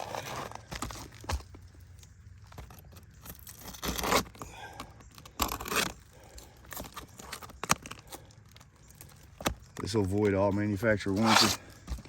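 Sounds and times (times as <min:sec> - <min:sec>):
shingle scraping strokes: 0:10.0 - 0:12.0.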